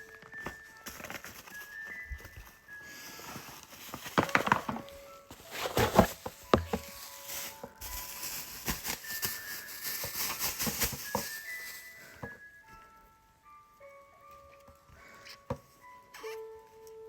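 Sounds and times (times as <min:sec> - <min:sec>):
packaging clicks knocks and rustles: 0:00.0 - 0:12.4.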